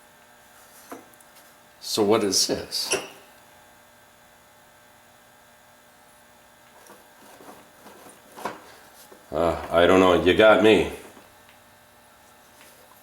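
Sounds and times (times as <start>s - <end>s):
low electrical hum: 0.0s - 13.0s
faint handling sounds: 6.7s - 9.9s.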